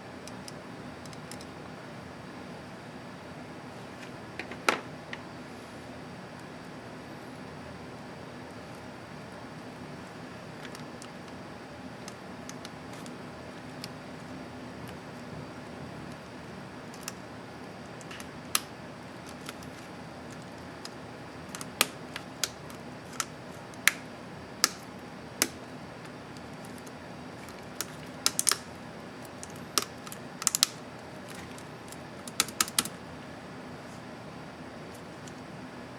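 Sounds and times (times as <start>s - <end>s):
laptop keys clicking: 0.2s - 1.5s, 10.5s - 11.4s, 16.1s - 17.2s, 17.8s - 33.0s.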